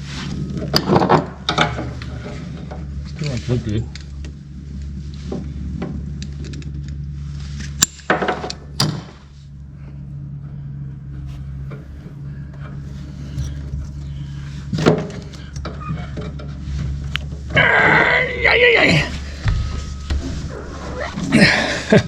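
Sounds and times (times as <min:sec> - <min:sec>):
low hum: 0:00.0 - 0:22.0
clatter of parts and tools: 0:00.4 - 0:07.0, 0:07.6 - 0:17.6.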